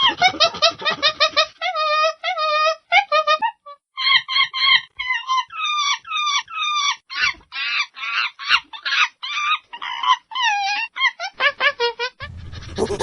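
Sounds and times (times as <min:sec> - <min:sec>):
high-pitched animal calls: 0:12.2 - 0:13.0.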